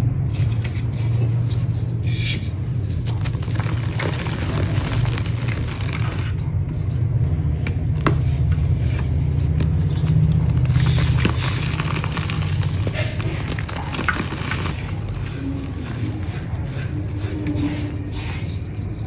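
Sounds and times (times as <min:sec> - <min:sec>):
dry mud crumbling: 0:03.0 - 0:06.6, 0:07.7 - 0:17.0.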